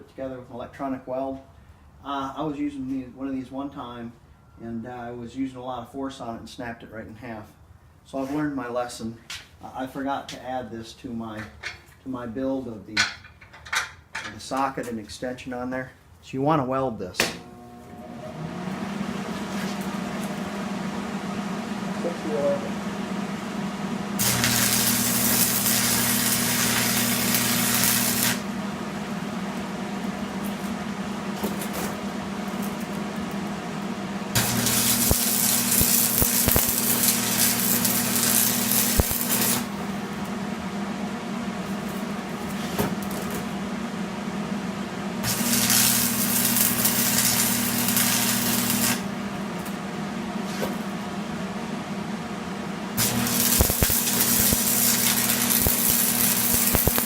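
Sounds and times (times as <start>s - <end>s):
welder hum: 17.2s - 57.0s
arc welding hiss: 24.2s - 30.8s, 31.4s - 33.4s, 34.3s - 39.9s, 45.2s - 49.2s, 53.0s - 57.0s.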